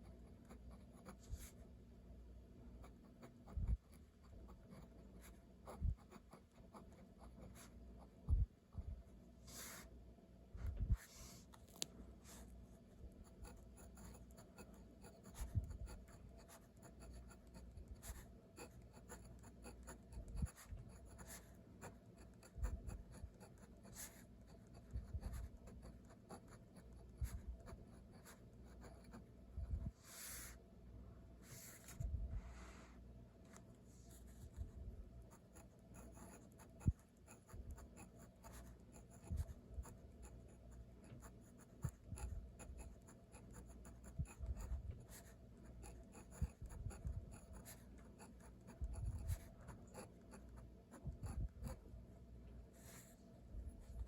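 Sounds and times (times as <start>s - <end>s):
pen scratching on paper: 0.0s - 1.6s, 2.8s - 8.4s, 13.2s - 30.6s, 31.4s - 32.1s, 34.1s - 51.9s.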